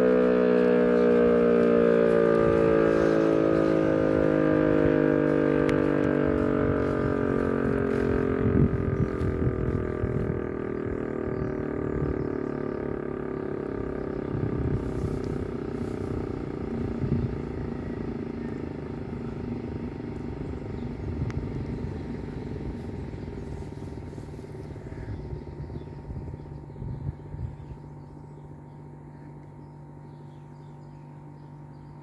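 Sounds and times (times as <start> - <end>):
siren winding down: 0.0 - 23.4.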